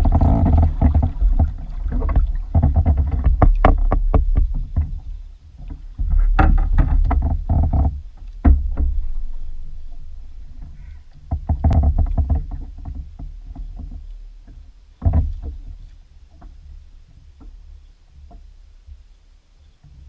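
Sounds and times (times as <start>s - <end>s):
gear knocking on plastic hull: 0.0s - 9.1s, 11.2s - 14.1s, 15.0s - 15.8s
low rumble: 0.0s - 12.8s.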